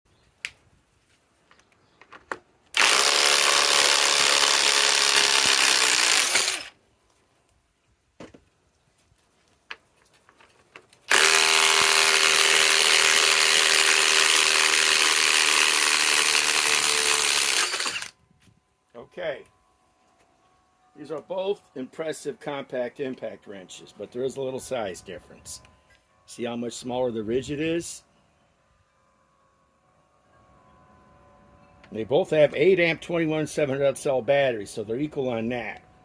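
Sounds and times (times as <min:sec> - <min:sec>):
impact wrench high whine: 0:02.7 - 0:06.8, 0:11.1 - 0:18.2.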